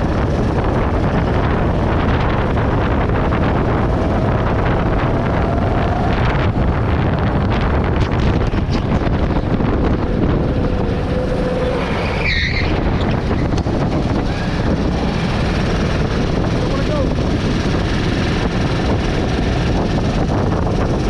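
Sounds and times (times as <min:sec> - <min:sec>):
go-kart engine running: 0:00.0 - 0:21.0
wind rushing: 0:00.0 - 0:21.0
tyre squeal: 0:10.9 - 0:13.5.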